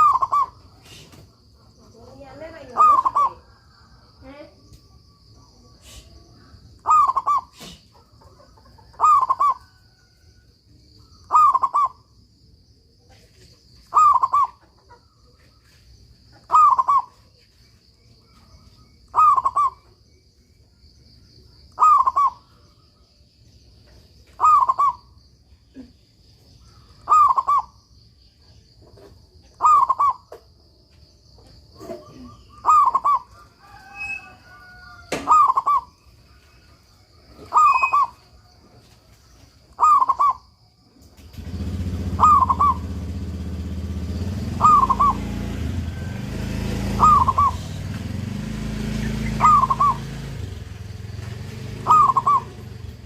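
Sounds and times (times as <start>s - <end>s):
dove cooing: 0.0s - 1.7s, 2.4s - 3.9s, 5.8s - 10.0s, 11.2s - 12.1s, 13.9s - 15.0s, 16.4s - 17.3s, 18.2s - 20.0s, 21.8s - 22.6s, 24.3s - 25.1s, 26.7s - 27.8s, 29.5s - 30.4s, 31.8s - 36.1s, 37.2s - 38.4s, 39.7s - 40.5s, 41.4s - 43.4s, 44.0s - 48.0s, 48.8s - 50.8s, 51.6s - 53.0s.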